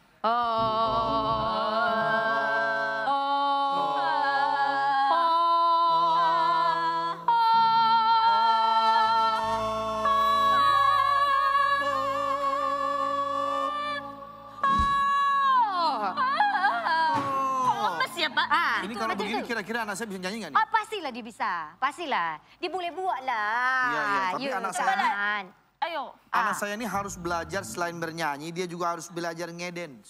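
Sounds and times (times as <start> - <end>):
voices singing held notes: 0.2 - 19.4.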